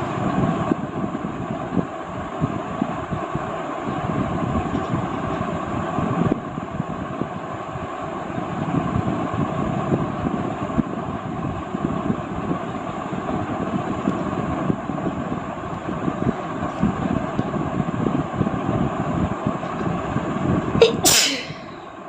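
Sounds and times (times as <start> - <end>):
rushing air: 15.9 - 22.0.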